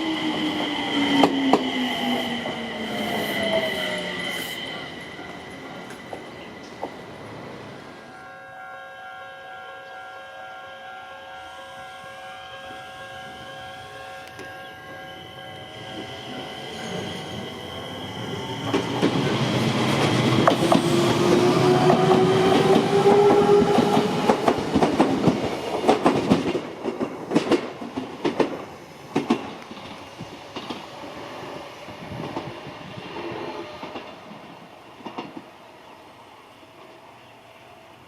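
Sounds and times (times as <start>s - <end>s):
train wheels clacking over rail joints: 19.9s - 30.9s.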